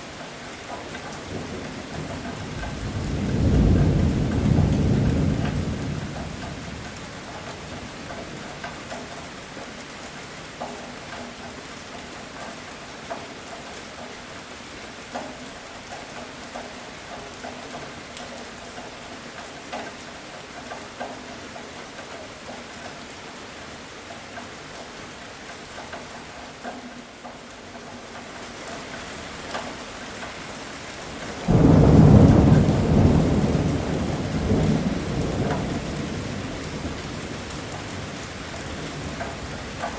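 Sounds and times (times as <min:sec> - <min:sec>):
heavy rain: 0:00.0 - 0:39.9
thunder crack and rumble: 0:01.3 - 0:08.6, 0:31.2 - 0:39.9.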